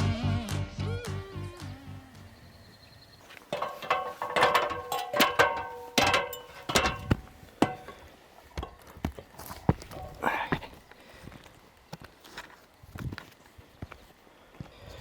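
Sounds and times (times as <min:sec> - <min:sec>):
background music: 0:00.0 - 0:02.4.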